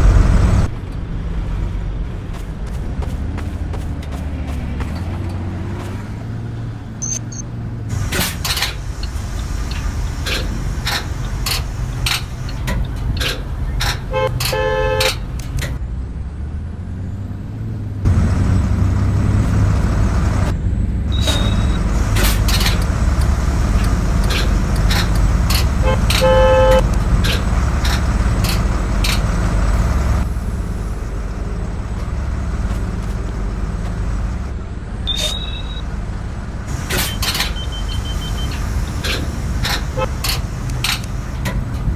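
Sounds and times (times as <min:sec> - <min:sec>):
bus engine rumbling: 0:00.0 - 0:41.9
horn honks: 0:13.8 - 0:15.7, 0:21.1 - 0:22.8, 0:24.3 - 0:27.4, 0:35.0 - 0:36.0, 0:36.7 - 0:40.5.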